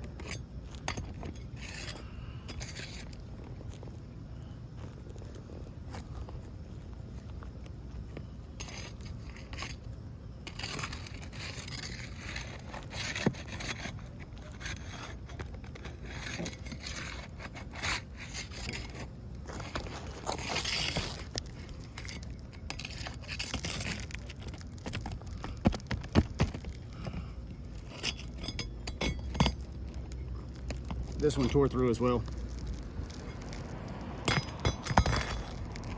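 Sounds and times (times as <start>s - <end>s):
roof shingles being scraped: 10.5s - 30.1s.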